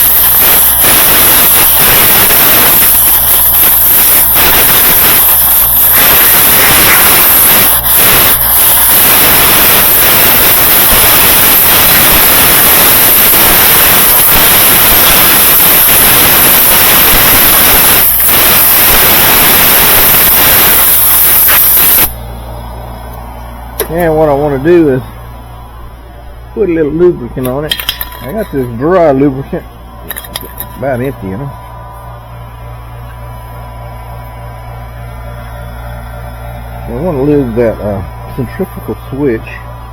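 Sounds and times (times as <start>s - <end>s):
compressed air blow gun hissing: 0.0s - 22.1s.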